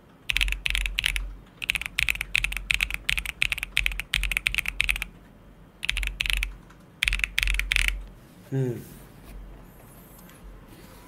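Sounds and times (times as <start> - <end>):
mechanical keyboard typing: 0.3 - 5.2, 5.8 - 8.0.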